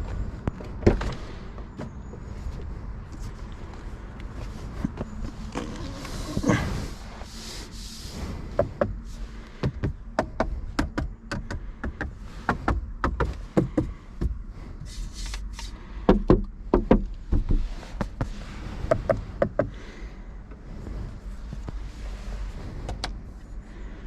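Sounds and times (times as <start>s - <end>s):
low steady hum: 0.0s - 24.0s
irregular knocks and clicks: 8.5s - 14.5s, 15.4s - 19.8s.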